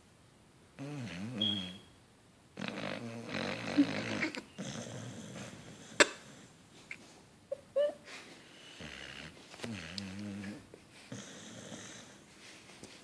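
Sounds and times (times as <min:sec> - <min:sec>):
dog snoring: 0:00.8 - 0:01.8, 0:02.6 - 0:06.5, 0:08.6 - 0:12.2.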